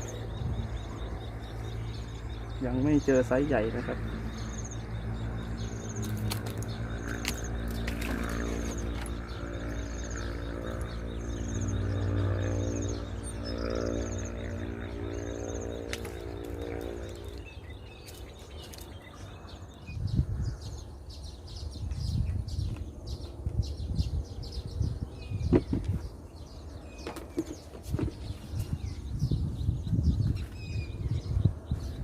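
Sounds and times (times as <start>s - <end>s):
steady low drone: 0.0s - 27.0s
small birds chirping: 0.0s - 32.0s
low thumps and rustles: 25.4s - 26.1s.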